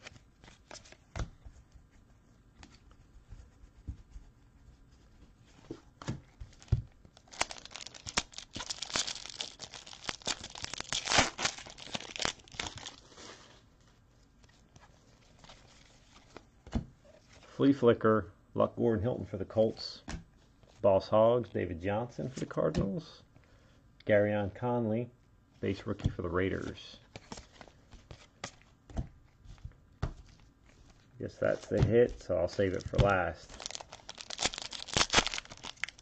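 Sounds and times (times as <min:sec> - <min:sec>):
foil wrapper tearing and crinkling: 0:07.2 - 0:13.4, 0:32.7 - 0:36.0.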